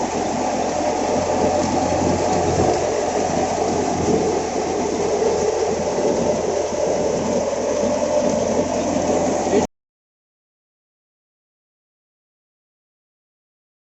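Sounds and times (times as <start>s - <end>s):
thresher and tractor droning: 0.0s - 9.7s.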